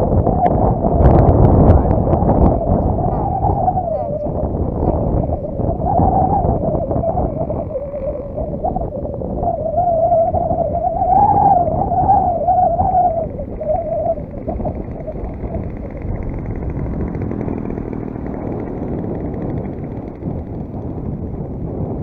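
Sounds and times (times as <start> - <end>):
wind buffeting microphone: 0.0 - 22.0
model plane engine buzzing: 14.2 - 22.0.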